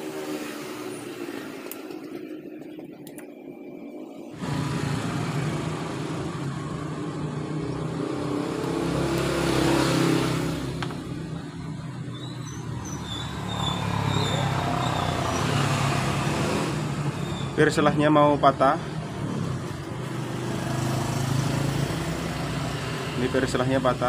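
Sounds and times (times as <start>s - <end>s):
vehicle engine running: 4.4s - 11.8s.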